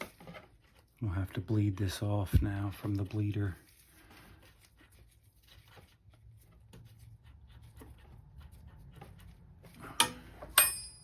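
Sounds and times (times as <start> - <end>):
handling of metal tools: 9.8 - 11.0
sharp metallic clink: 10.0 - 11.0.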